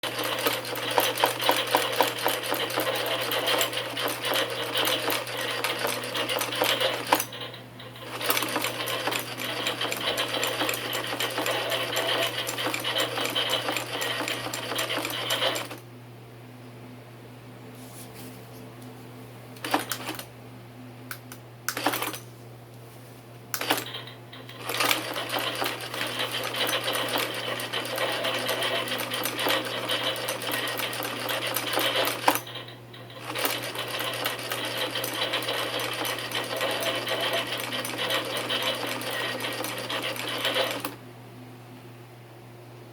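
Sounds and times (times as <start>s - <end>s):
typewriter keys clattering: 0.0s - 15.8s, 23.6s - 40.9s.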